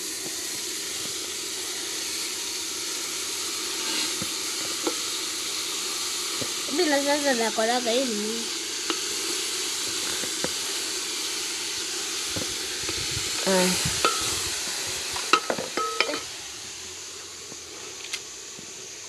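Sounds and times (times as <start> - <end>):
greens sizzling in a pot: 0.0 - 19.0
spoon scraping and knocking a pot: 15.3 - 16.2.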